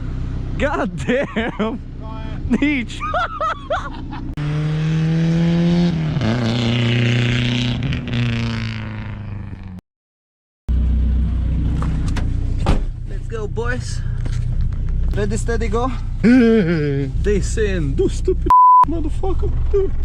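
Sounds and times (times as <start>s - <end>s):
car engine revving: 3.9s - 9.8s
low engine rumble: 10.7s - 20.0s.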